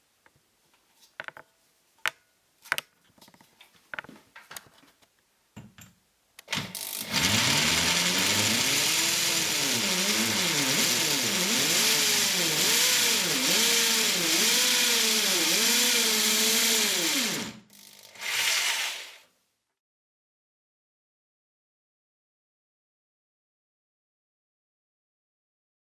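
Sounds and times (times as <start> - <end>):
hammer drill motor running: 6.5 - 19.2.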